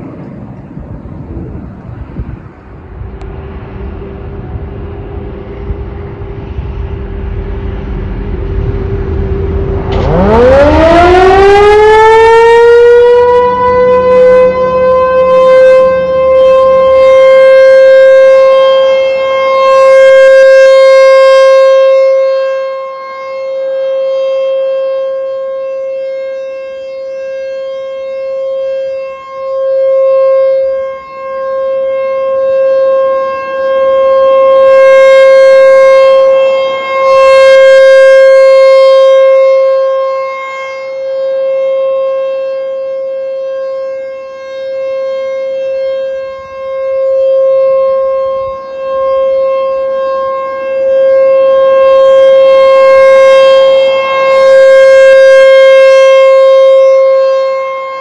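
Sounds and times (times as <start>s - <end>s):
low rumble: 0.0s - 11.5s
rotating siren wailing: 0.0s - 58.0s.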